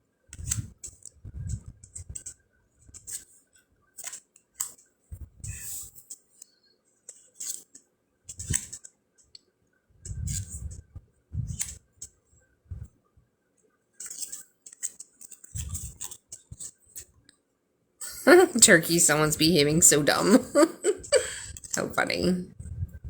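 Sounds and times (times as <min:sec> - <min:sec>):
cards sliding and tapping: 0:04.0 - 0:04.8, 0:07.1 - 0:08.9, 0:14.0 - 0:16.8.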